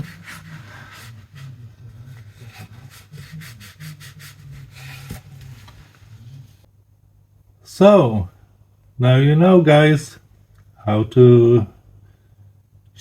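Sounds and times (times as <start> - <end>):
rag rubbing on compressor: 0.0 - 6.6.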